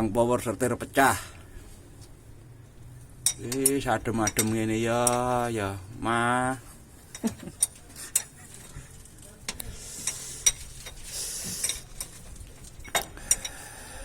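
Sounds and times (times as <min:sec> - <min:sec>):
metallic clinks and taps: 0:03.2 - 0:05.4, 0:07.1 - 0:08.4, 0:09.5 - 0:13.6.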